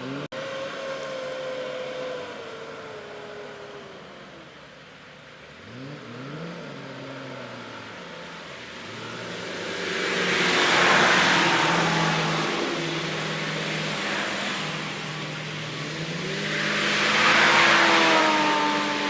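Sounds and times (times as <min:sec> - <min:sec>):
truck engine revving: 0:05.6 - 0:19.0.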